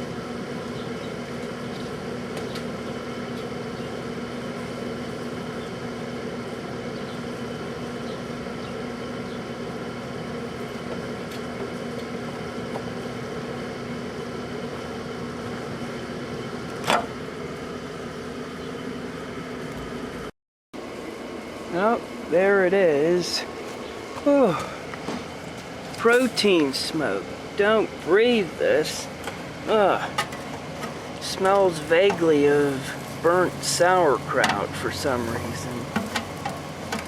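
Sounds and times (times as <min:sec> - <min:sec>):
microwave oven humming: 0:00.0 - 0:37.0.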